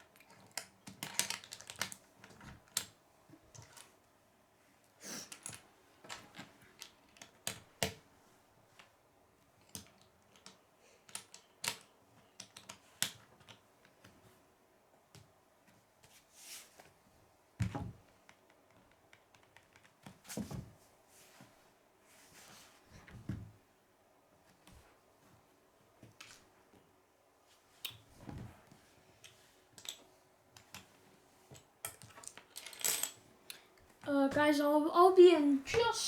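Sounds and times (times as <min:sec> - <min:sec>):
plastic bricks clicking together: 0:00.1 - 0:02.0.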